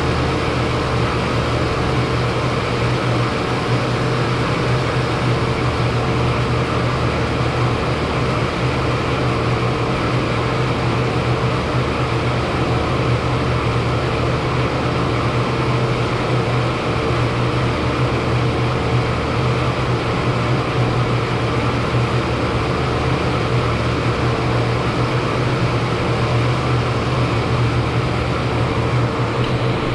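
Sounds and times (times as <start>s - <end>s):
air conditioning unit hum: 0.0s - 29.9s
rushing air noise: 29.1s - 29.9s.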